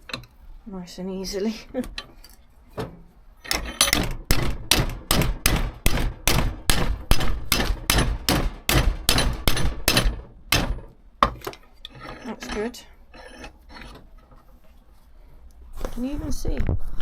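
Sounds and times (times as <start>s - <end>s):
hammer blows on sheet steel: 3.9s - 11.0s.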